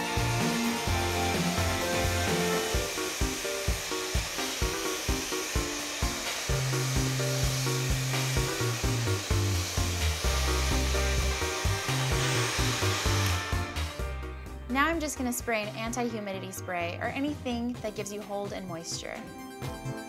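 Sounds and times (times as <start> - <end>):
hand-held blow-dryer blowing: 0.0 - 14.4
background music with beat and bass: 0.0 - 20.0.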